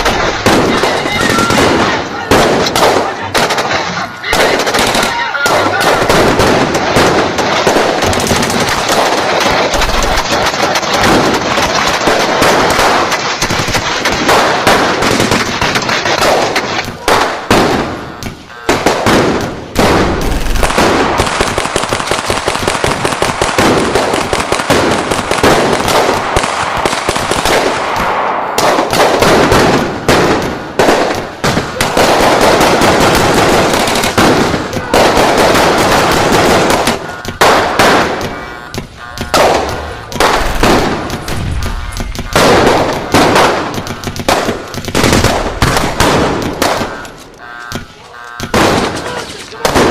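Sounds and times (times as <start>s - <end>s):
automatic gunfire: 0.0s - 49.9s.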